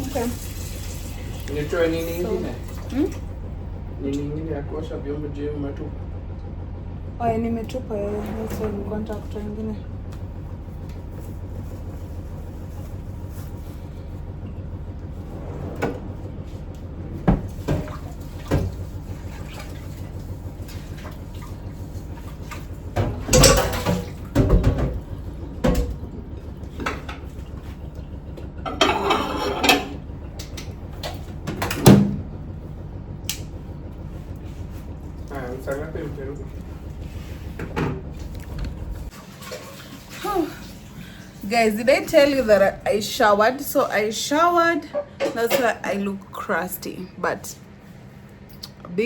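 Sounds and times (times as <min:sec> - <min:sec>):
washing machine humming: 0:00.0 - 0:49.0
dishes and cupboards clattering: 0:23.0 - 0:25.0, 0:28.7 - 0:30.0.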